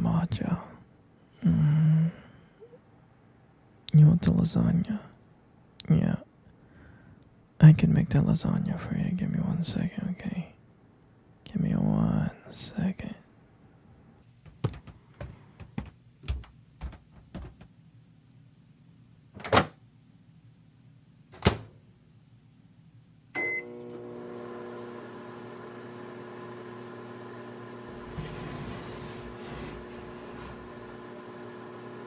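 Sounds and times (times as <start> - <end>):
microwave oven humming: 23.3 - 32.0
microwave beep: 23.4 - 24.0.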